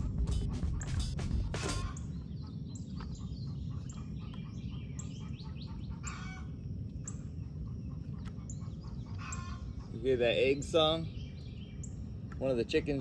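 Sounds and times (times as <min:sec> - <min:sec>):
hen cackling: 0:00.7 - 0:06.6, 0:07.5 - 0:10.1.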